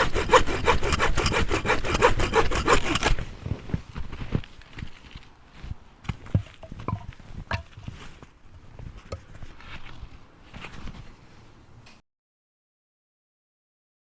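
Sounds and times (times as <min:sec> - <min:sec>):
wood knocking and crunching in snow: 0:03.0 - 0:11.1.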